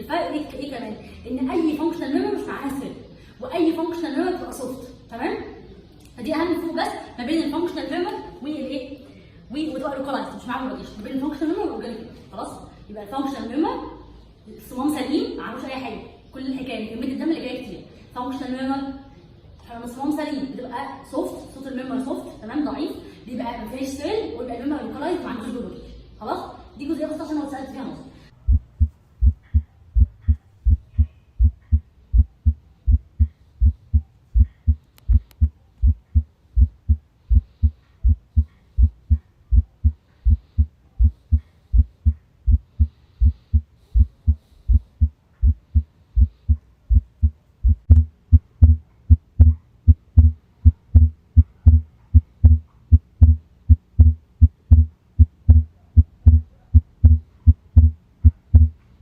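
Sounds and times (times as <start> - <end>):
heartbeat through stethoscope: 28.4 - 58.8.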